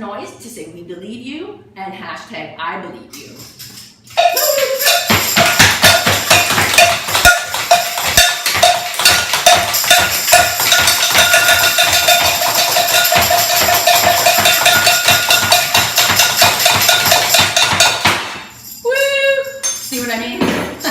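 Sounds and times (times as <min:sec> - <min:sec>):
noisemakers banging and rattling: 0:03.5 - 0:18.9.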